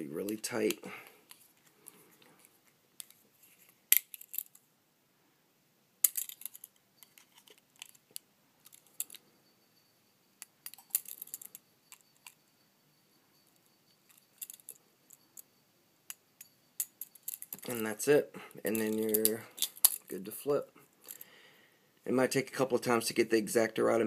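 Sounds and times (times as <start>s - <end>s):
metal tool clicking and scraping: 10.4s - 12.4s, 13.6s - 15.5s, 16.1s - 17.8s, 18.7s - 20.1s.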